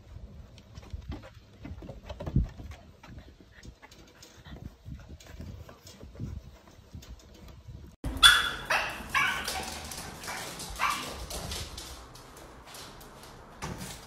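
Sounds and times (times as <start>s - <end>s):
dog barking: 8.1s - 11.5s.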